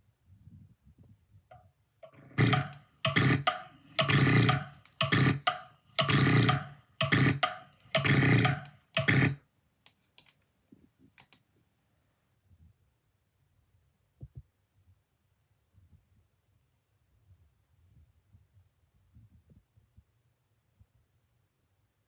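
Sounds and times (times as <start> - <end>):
person snoring loudly: 2.1 - 9.4.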